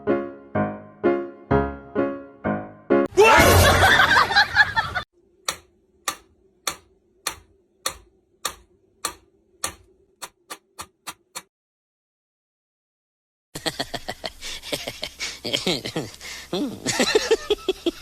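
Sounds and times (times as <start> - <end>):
sharp ticks: 5.5 - 11.5
faint steady hum: 13.8 - 18.0.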